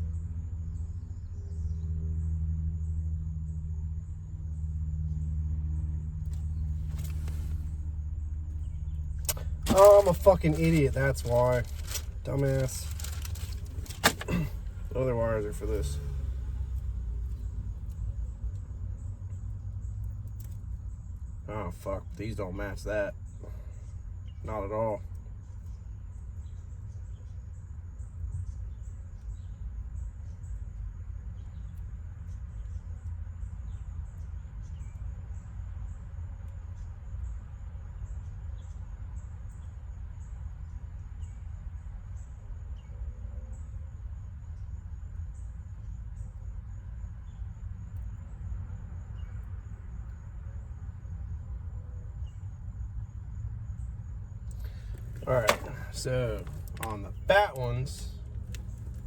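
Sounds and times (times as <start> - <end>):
insects trilling: 6.3 - 25.7, 52.0 - 59.0.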